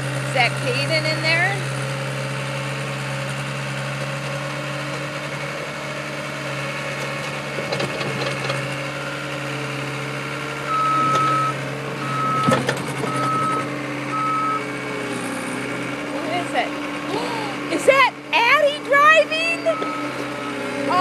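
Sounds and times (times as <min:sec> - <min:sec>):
skid steer engine running: 0:00.0 - 0:21.0
high-pitched backup alarm beeps: 0:10.7 - 0:14.6, 0:19.4 - 0:21.0.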